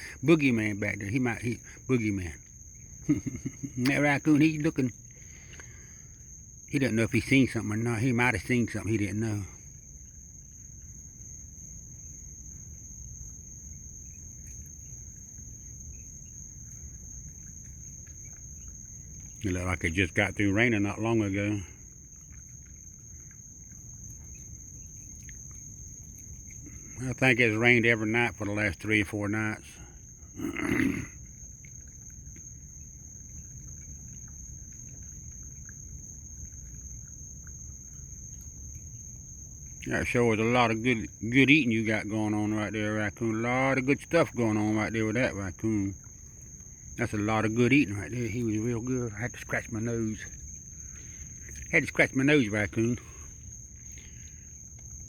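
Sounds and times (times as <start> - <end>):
crickets chirping: 0.0 - 55.0
night insects trilling: 0.0 - 55.0
faint ticks: 4.9 - 6.2, 12.4 - 27.2, 30.0 - 40.0.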